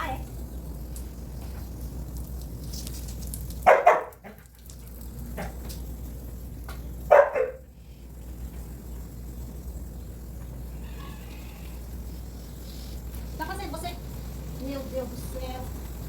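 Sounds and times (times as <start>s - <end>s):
dog barking: 3.6s - 4.5s, 7.1s - 7.7s.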